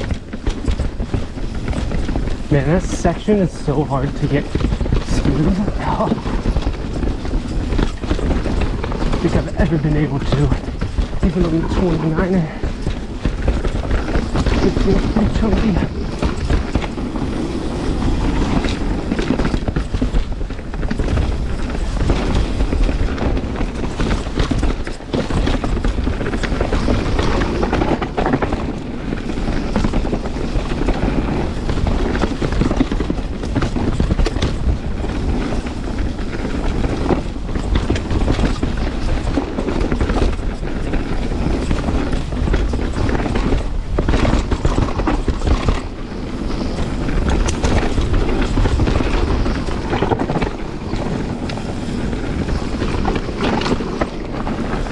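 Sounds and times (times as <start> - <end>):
bike rattling and knocking: 0.0 - 54.9
low rumble on microphone: 0.0 - 54.9
tyres rumbling over rocks: 0.0 - 54.9.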